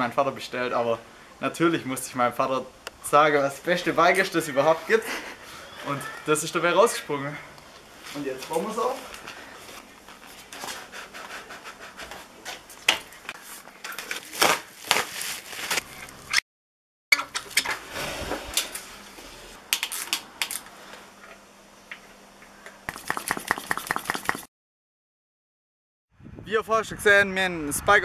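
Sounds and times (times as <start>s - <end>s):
bike parts and tools clicking: 19.7s - 24.4s.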